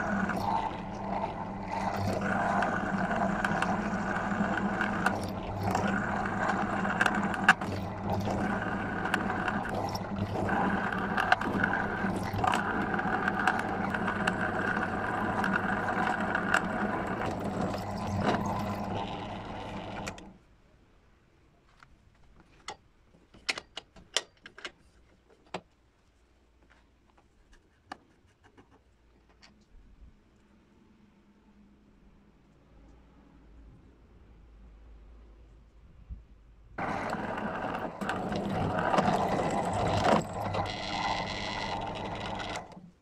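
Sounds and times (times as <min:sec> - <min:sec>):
clicks and scrapes: 0:00.0 - 0:20.4, 0:26.6 - 0:29.8, 0:36.8 - 0:43.0
power tool motor whining: 0:00.0 - 0:20.4, 0:36.8 - 0:43.0.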